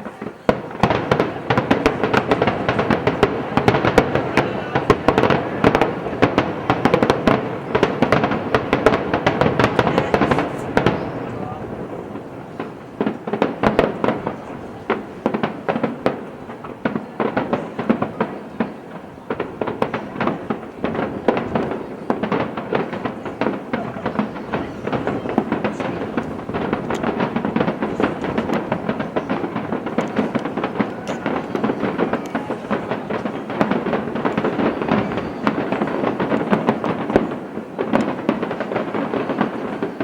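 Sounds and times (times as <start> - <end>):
fireworks bursting and crackling: 0.0 - 40.0.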